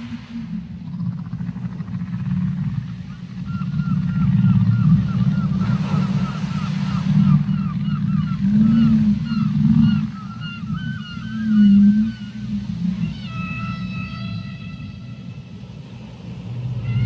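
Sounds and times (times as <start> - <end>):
whale moaning: 0.0 - 17.0
whale high chirps: 3.0 - 15.8, 16.6 - 17.0.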